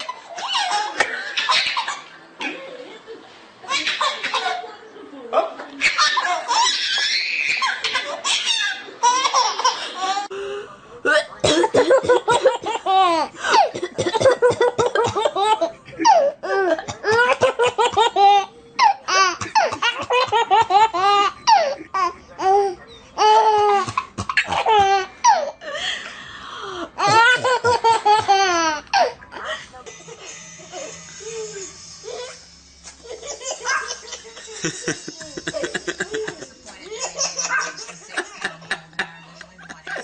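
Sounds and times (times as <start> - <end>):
baby laughing: 0.0 - 2.6, 5.8 - 10.3, 27.0 - 29.2, 33.0 - 38.2.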